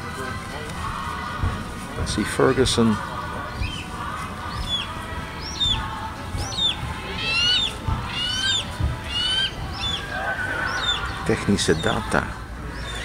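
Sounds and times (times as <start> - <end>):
faint background music: 0.0 - 13.0
bird chirping: 3.6 - 13.0.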